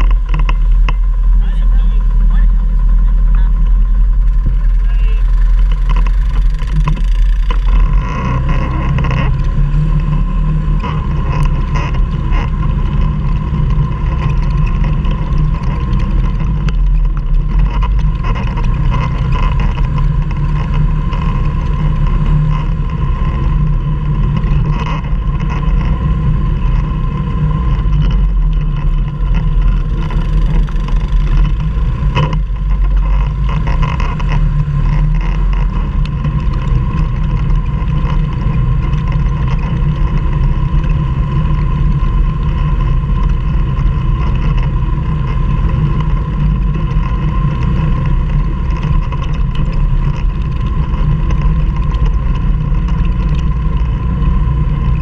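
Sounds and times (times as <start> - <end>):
quad engine running under load: 0.0 - 55.0.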